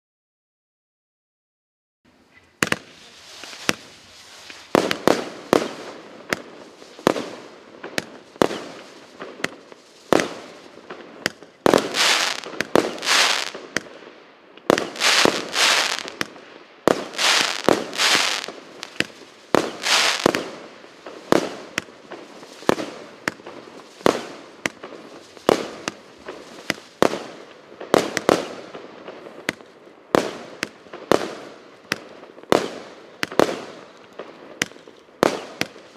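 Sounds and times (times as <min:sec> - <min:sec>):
fireworks launch thumps and bursts: 0:02.6 - 0:03.9, 0:04.5 - 0:07.3, 0:07.9 - 0:14.0, 0:14.7 - 0:20.6, 0:21.2 - 0:27.3, 0:28.0 - 0:28.8, 0:34.6 - 0:35.8
fireworks crackling: 0:02.6 - 0:35.9.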